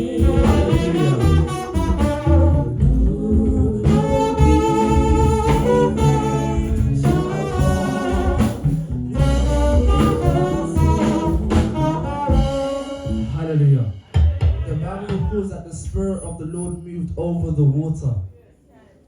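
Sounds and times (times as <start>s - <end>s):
music with melody over bass: 0.0s - 13.9s.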